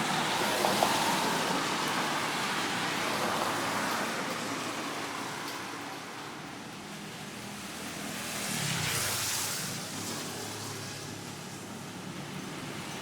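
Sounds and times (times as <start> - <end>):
traffic noise: 0.0 - 13.0
vehicle passing close: 7.6 - 11.6.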